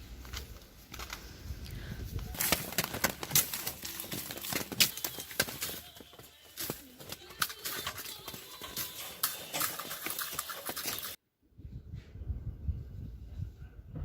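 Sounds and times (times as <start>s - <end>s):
rustling: 0.0s - 11.2s
low rumbling wind noise: 0.8s - 2.4s, 11.4s - 14.0s.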